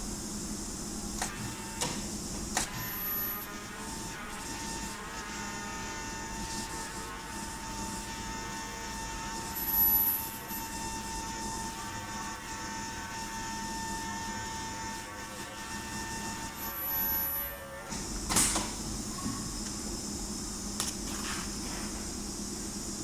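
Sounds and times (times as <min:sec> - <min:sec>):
ultrasonic machine humming: 0:00.0 - 0:23.0
high-pitched whine: 0:01.2 - 0:18.2.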